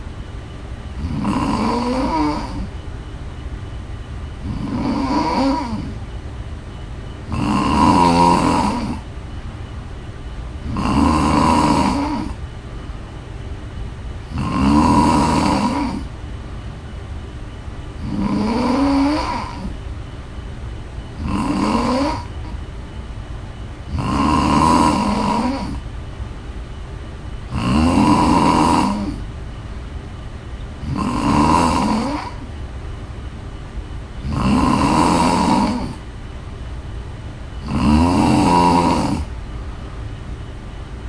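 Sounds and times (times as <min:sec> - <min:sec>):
steady low hum: 0:00.0 - 0:41.0
woman snoring: 0:00.9 - 0:02.8, 0:04.4 - 0:06.0, 0:07.2 - 0:09.1, 0:10.6 - 0:12.4, 0:14.3 - 0:16.1, 0:18.0 - 0:19.8, 0:21.2 - 0:22.6, 0:23.9 - 0:25.8, 0:27.5 - 0:29.2, 0:30.8 - 0:32.5, 0:34.2 - 0:36.1, 0:37.6 - 0:39.4.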